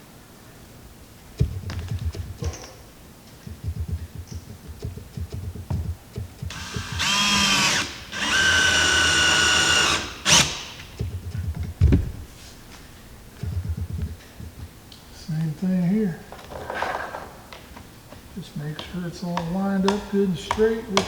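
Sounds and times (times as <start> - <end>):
electric drill driving screws: 6.5 - 10.9.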